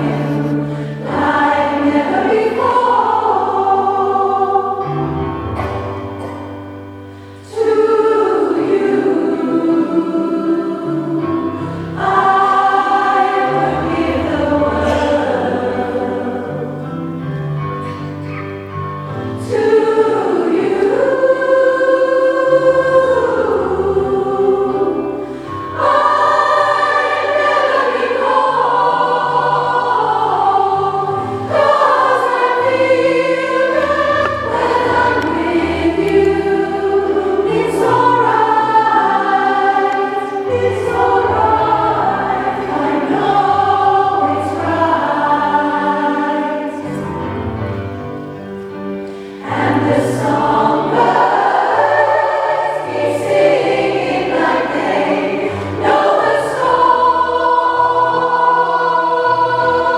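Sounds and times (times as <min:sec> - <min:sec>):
singers breathing: 0:00.0 - 0:01.1, 0:07.0 - 0:07.6, 0:25.2 - 0:25.8, 0:49.0 - 0:49.6
choir singing in harmony: 0:00.0 - 0:59.9.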